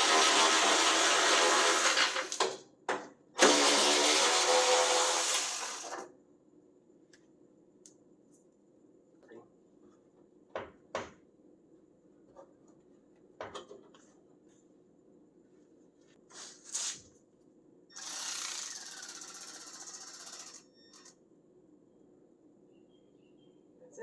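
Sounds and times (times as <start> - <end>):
power tool running: 0.0 - 2.5, 3.4 - 6.0, 18.0 - 20.6.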